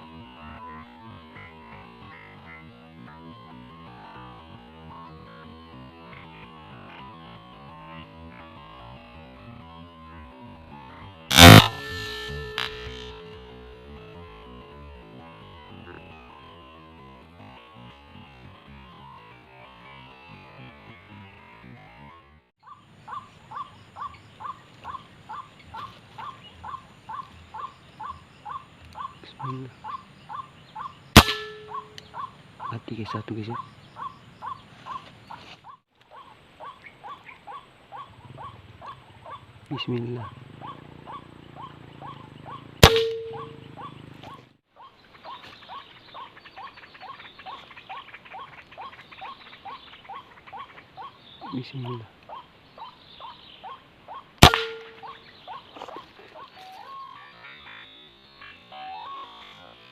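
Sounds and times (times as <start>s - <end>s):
bird harsh call: 10.8s - 16.8s, 22.6s - 59.9s
short squeaky rising call: 11.3s - 13.8s.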